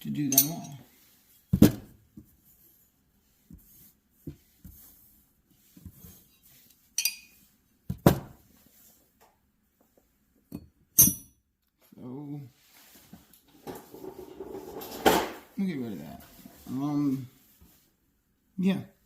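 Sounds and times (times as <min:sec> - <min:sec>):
ringing metal clink: 0:07.0 - 0:07.4, 0:11.0 - 0:11.4.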